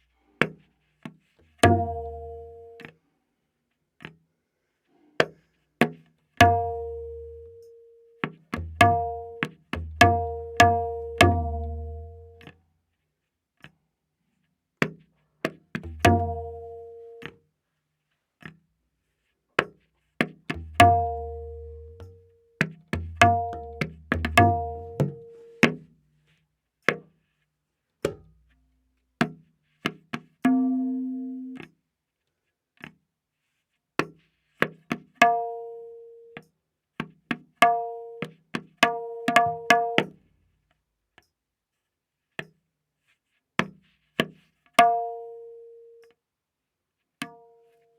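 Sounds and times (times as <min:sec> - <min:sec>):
tabla strokes: 0:00.2 - 0:03.0, 0:05.2 - 0:12.6, 0:14.8 - 0:17.4, 0:18.4 - 0:27.4, 0:28.0 - 0:28.6, 0:29.2 - 0:31.8, 0:33.5 - 0:40.4, 0:42.4 - 0:45.5.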